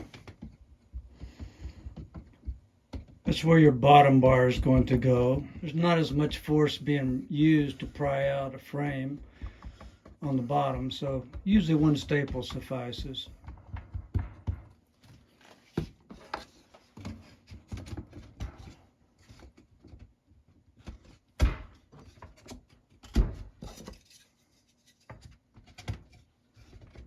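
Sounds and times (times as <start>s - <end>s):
light wooden clicks and knocks: 0.0s - 3.3s
wooden thumps: 0.0s - 18.1s.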